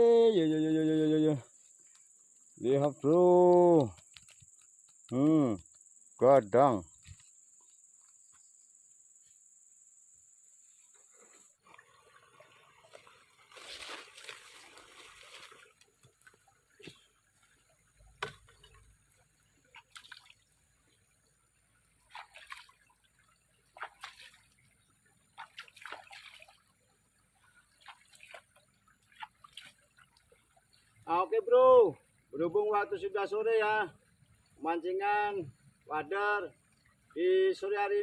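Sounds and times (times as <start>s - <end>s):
water sloshing and trickling: 10.9s - 31.1s, 33.9s - 34.6s, 36.5s - 37.2s
water splashes and drips: 11.6s - 31.1s.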